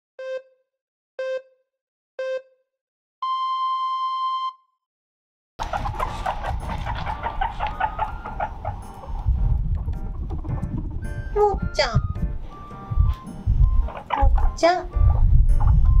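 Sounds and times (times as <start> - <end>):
electronic countdown beeps: 0.2 - 0.6, 1.2 - 1.6, 2.2 - 2.6, 3.2 - 4.7, 10.9 - 16.0
high squeaks and clicks: 5.6 - 16.0
low rumble: 5.6 - 16.0.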